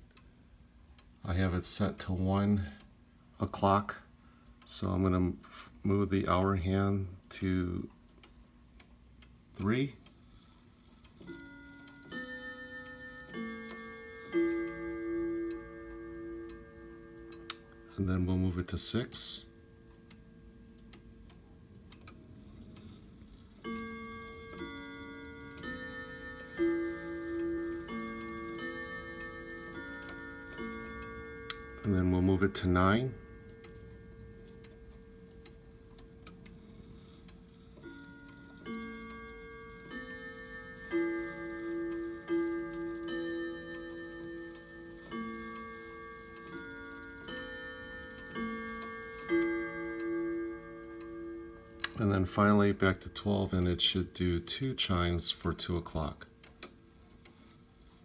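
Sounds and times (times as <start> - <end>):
clock ticking: 7.6 - 58.0
clock chimes playing melody: 11.2 - 56.2.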